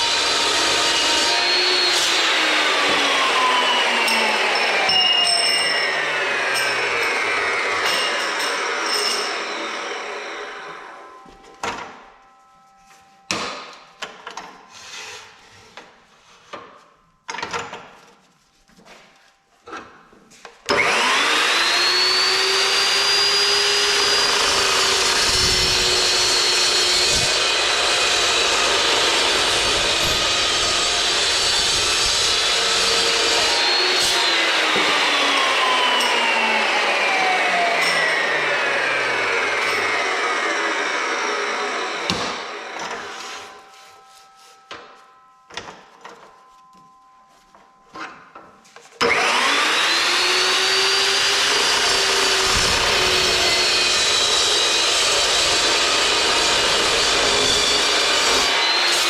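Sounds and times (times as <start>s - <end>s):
chop saw cutting steel tubing: 0.0s - 11.2s, 20.6s - 43.7s, 49.0s - 59.0s
saw motor whine: 0.0s - 11.3s, 20.7s - 43.7s, 49.0s - 59.0s.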